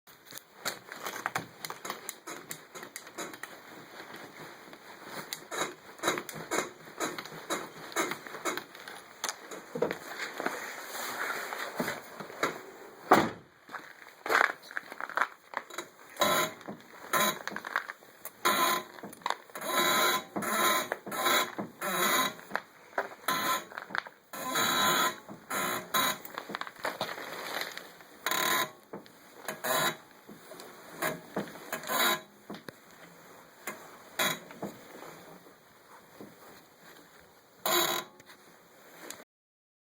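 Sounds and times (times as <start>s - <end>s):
car squeaks and creaks: 5.4s - 8.7s, 15.6s - 22.6s, 23.2s - 26.4s, 27.2s - 30.1s, 30.8s - 32.6s.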